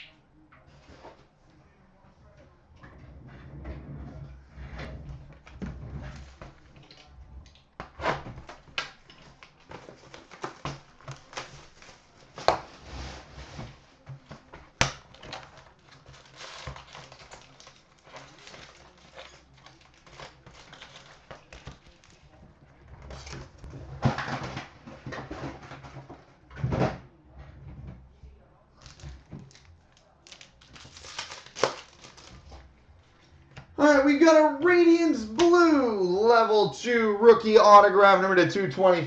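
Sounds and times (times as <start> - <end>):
wrapping crinkling and tearing: 8.5 - 12.6, 14.8 - 22.3, 28.8 - 32.6.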